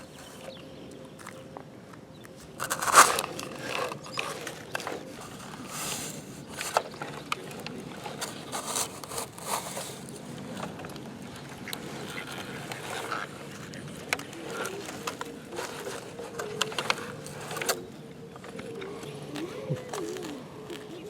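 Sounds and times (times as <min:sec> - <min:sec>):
toy digger parts clicking: 0:02.4 - 0:10.7, 0:14.1 - 0:17.8
bucket scraping dirt: 0:02.5 - 0:07.3, 0:08.0 - 0:10.3.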